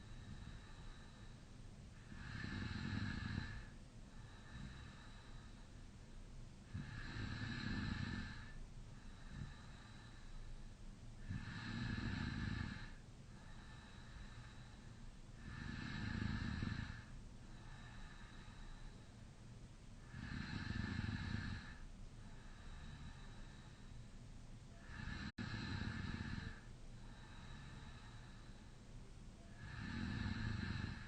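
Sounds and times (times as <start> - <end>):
quiet breathing: 0.0 - 31.0
man snoring: 2.1 - 3.7, 6.7 - 10.1, 11.2 - 14.6, 15.4 - 18.6, 20.1 - 21.8, 24.8 - 28.4, 29.6 - 31.0.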